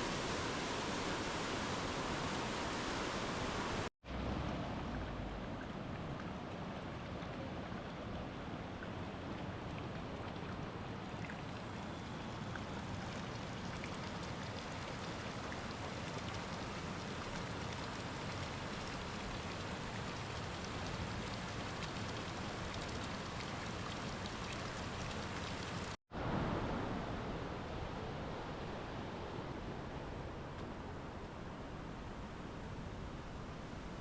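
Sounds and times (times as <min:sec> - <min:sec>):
rain falling: 0:00.0 - 0:26.0.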